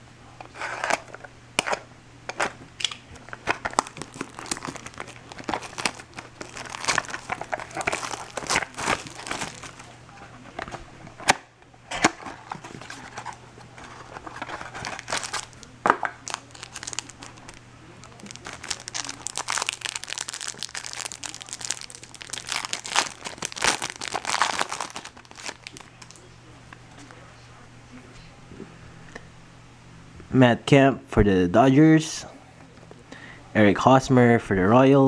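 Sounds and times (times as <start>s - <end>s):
plastic wrapping crinkling and tearing: 0.4s - 26.4s.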